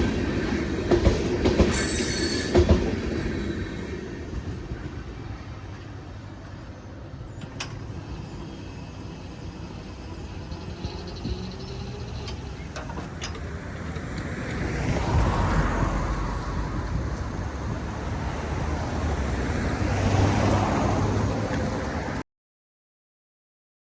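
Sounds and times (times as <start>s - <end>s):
vehicles passing: 7.4s - 22.2s.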